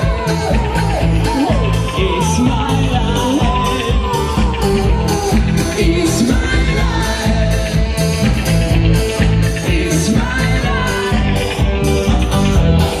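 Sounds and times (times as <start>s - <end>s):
drum beat: 0.0s - 10.4s
bass: 0.0s - 13.0s
pop-rock song: 0.0s - 13.0s.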